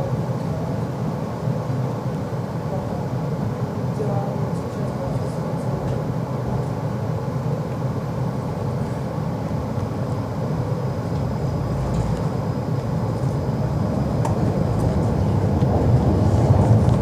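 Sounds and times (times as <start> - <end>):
tram wheels rumbling: 11.1 - 17.0.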